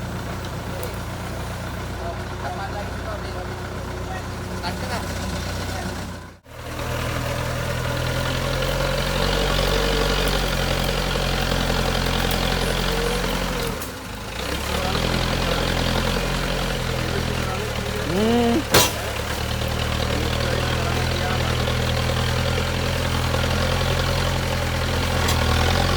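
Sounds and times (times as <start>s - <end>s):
diesel engine running: 0.0s - 25.9s
sharp knock: 18.7s - 19.0s.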